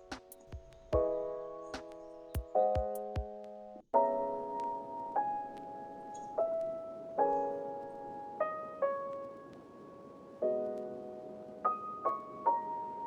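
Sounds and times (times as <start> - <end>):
soft piano music: 0.0 - 13.0.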